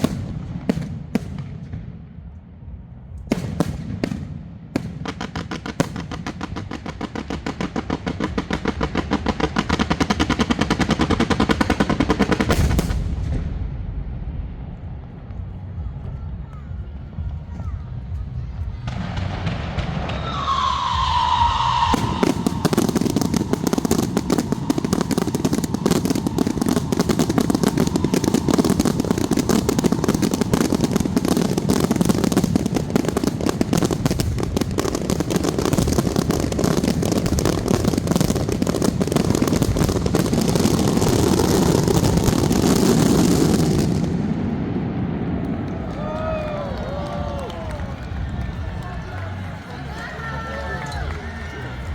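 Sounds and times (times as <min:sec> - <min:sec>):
firecrackers crackling: 0:00.0 - 0:51.9
firework whistle gliding downward: 0:19.9 - 0:33.2, 0:35.5 - 0:44.0.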